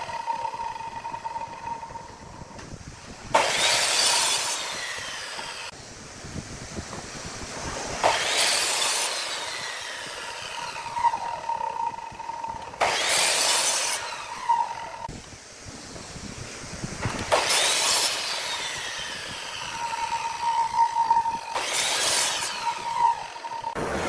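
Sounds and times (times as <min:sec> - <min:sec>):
wood lathe whine: 0:00.0 - 0:02.7, 0:03.3 - 0:05.7, 0:08.0 - 0:15.1, 0:17.2 - 0:24.0
lathe tool scraping wood: 0:03.3 - 0:05.7, 0:08.0 - 0:15.1, 0:17.2 - 0:23.8.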